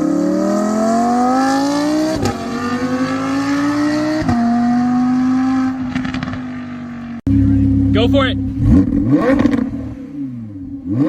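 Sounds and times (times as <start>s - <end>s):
car engine accelerating: 0.0s - 11.0s.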